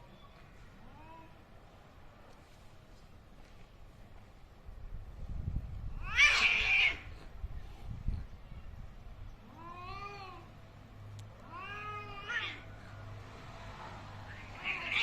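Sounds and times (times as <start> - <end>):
angry cat yowling: 6.0 - 7.1, 11.5 - 12.7, 14.4 - 15.0.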